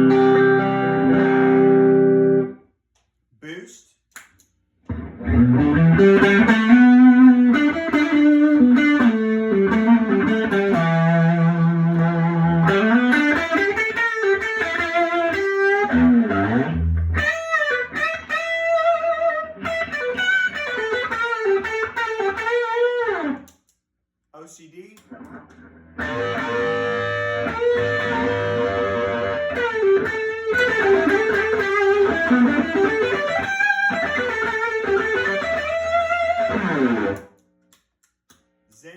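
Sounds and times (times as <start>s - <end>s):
electric guitar lead lines: 0.0s - 2.6s, 4.9s - 23.4s, 25.1s - 37.3s.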